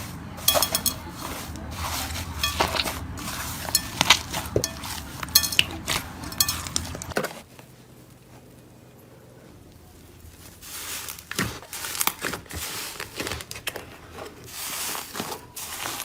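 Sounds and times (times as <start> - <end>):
hard objects clicking and clinking: 0.4 - 7.2.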